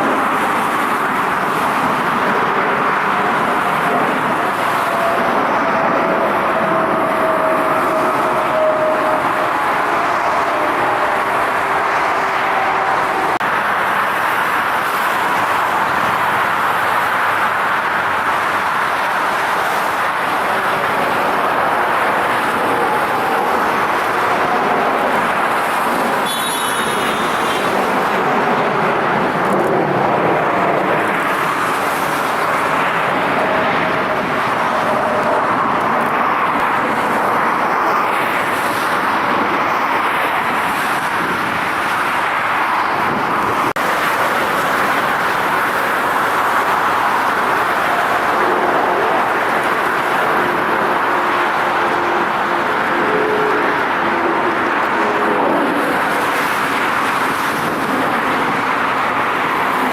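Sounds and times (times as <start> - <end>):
jet engines rushing: 0.0 - 59.9.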